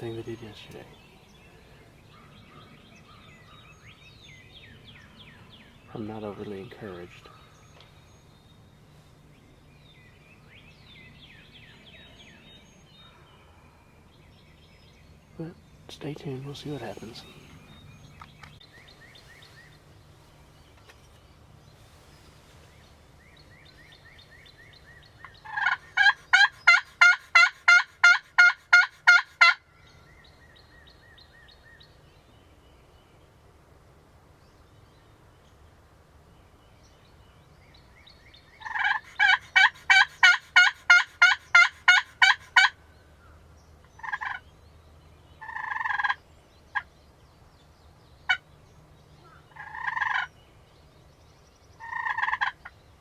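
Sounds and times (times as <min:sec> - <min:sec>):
wild turkey yelping: 0:25.2 - 0:29.6, 0:38.6 - 0:42.8, 0:44.0 - 0:44.4, 0:45.4 - 0:46.9, 0:49.2 - 0:50.3, 0:51.8 - 0:52.7.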